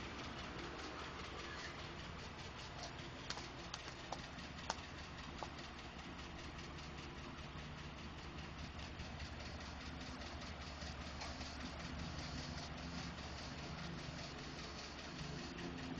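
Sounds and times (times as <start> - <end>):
car engine idling: 0.0 - 15.9
rapid light engine ticking: 0.0 - 15.9.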